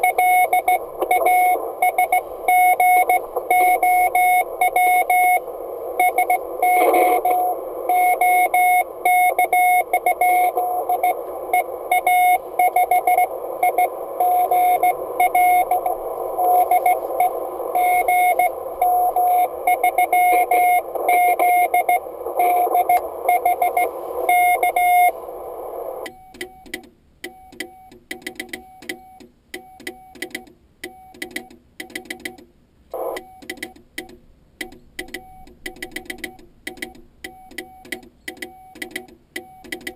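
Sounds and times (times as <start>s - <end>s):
receiver hiss: 0.0s - 26.1s, 32.9s - 33.2s
morse code beeps: 0.0s - 26.7s, 33.0s - 33.8s.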